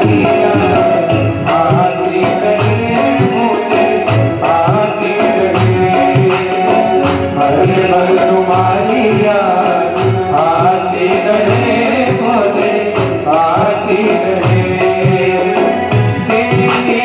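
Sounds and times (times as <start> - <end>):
sustained instrumental tones: 0.0 - 6.1
devotional song singing: 0.0 - 17.0
steady drum beat: 0.0 - 17.0.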